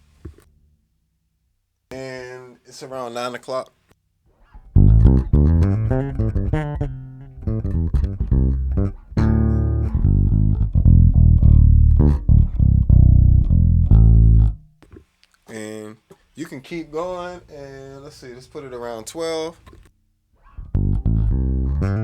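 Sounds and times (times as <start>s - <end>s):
electric bass guitar notes: 4.6s - 14.8s, 20.4s - 22.0s.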